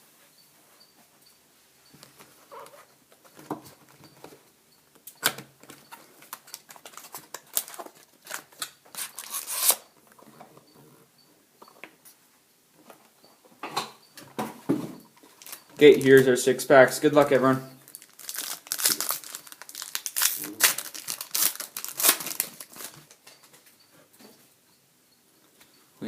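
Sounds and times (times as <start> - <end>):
foil packs rustling: 5.7 - 9.8, 15.2 - 23.3.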